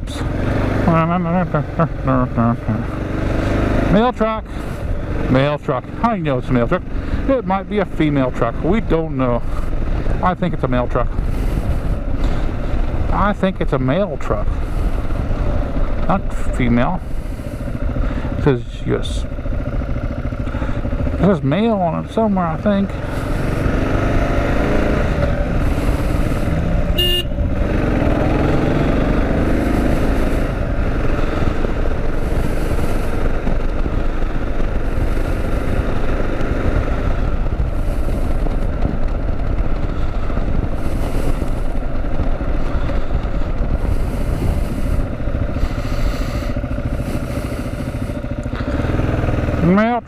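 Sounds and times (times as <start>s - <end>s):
motorcycle engine running: 0.0s - 50.0s
wind noise on microphone: 11.1s - 13.0s, 31.6s - 48.7s.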